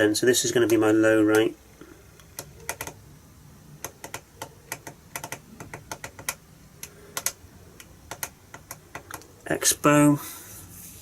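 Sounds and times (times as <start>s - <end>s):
radio transmitter buttons clicking: 0.6s - 1.6s, 2.2s - 3.0s, 3.8s - 9.4s.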